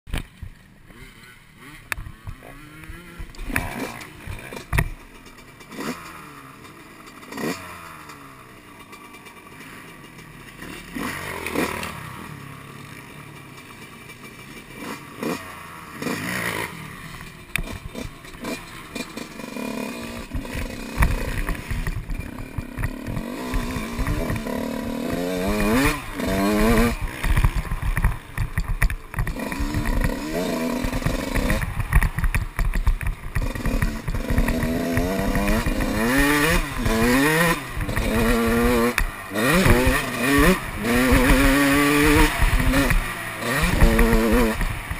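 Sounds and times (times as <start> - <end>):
dirt bike engines revving: 0.1 - 44.9.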